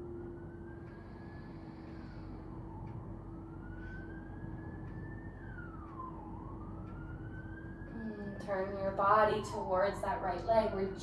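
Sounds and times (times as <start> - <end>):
emergency siren wailing: 0.0 - 11.0
steady low hum: 0.0 - 11.0.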